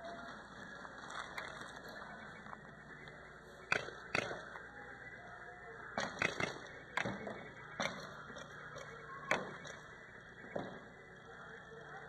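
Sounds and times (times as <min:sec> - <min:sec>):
paintball markers firing: 0:03.7 - 0:04.5, 0:06.0 - 0:09.8.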